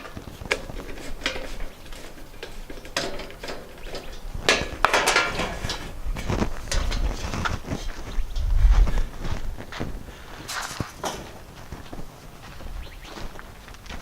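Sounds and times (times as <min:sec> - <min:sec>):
clicks and clatter of hand tools: 0:00.0 - 0:07.9.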